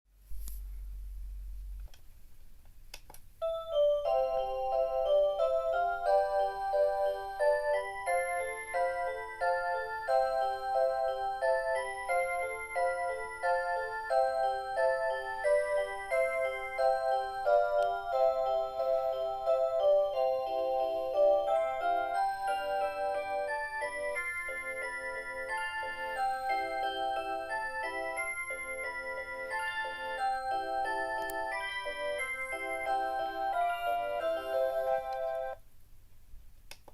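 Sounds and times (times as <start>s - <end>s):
alarm clock melody: 3.4s - 35.6s.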